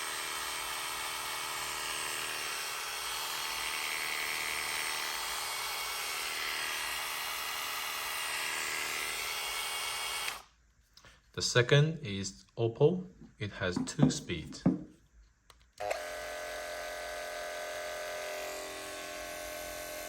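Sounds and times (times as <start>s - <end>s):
grooming clipper buzzing: 0.0s - 10.5s, 15.8s - 20.0s.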